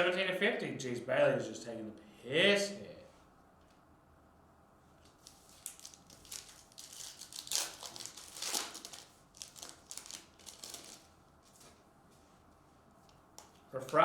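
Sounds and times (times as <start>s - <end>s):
foil wrapper crinkling: 5.0s - 11.8s.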